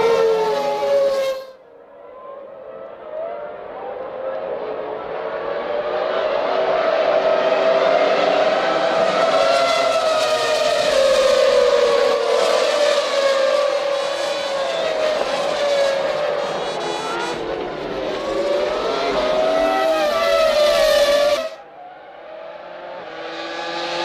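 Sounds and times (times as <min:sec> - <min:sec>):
racing car engines screaming: 0:05.4 - 0:24.0.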